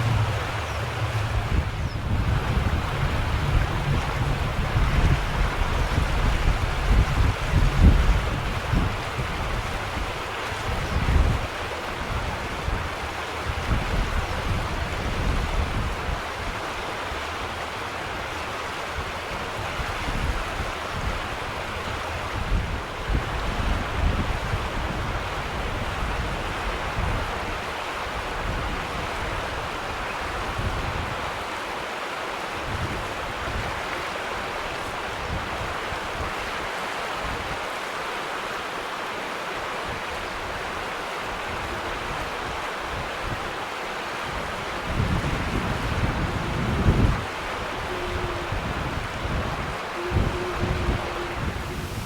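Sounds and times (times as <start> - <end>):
strong wind rushing: 0.0 - 12.9, 44.3 - 52.0
wind buffeting microphone: 0.0 - 17.6, 18.2 - 31.5, 39.9 - 52.0.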